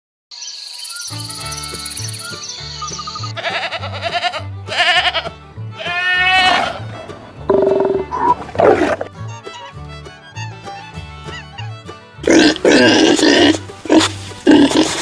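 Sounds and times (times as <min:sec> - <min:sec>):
bleating animal calls: 0:02.5 - 0:06.9.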